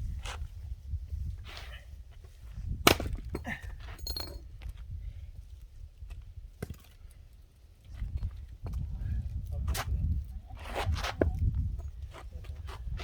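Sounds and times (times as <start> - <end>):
faint knocks and clinks: 3.8 - 4.4.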